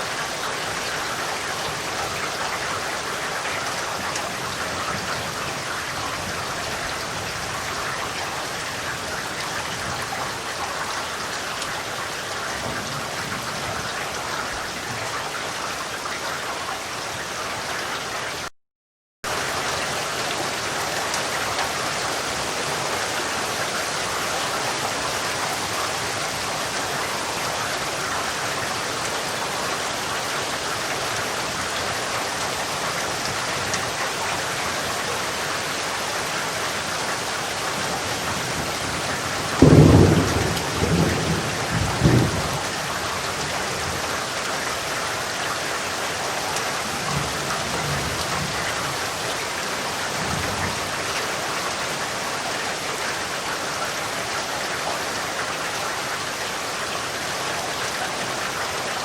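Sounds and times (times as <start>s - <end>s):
steady rain falling: 0.0s - 18.5s, 19.3s - 59.0s
thunder clap and rumbles: 37.7s - 44.0s.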